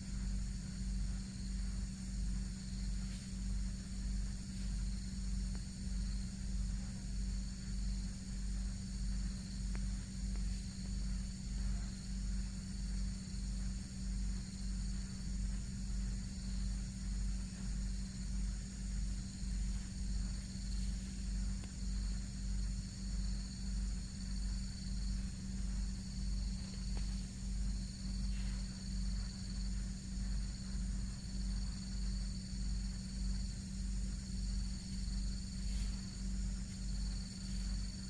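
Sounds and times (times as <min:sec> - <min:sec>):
insects chirring: 0:00.0 - 0:38.0
low pulsing hum: 0:00.0 - 0:38.0.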